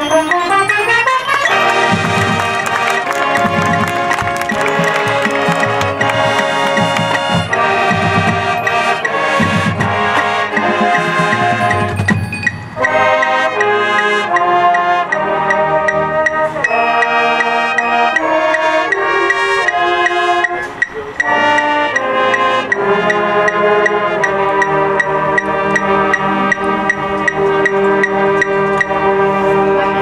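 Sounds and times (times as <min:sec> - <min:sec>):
marching band brass chords: 0:00.0 - 0:30.0.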